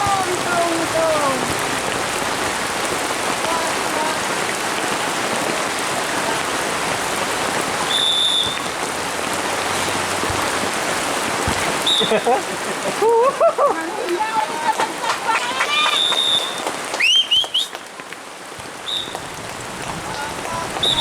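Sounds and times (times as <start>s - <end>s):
heavy rain falling: 0.0s - 21.0s
short high whistle blast: 7.9s - 8.6s.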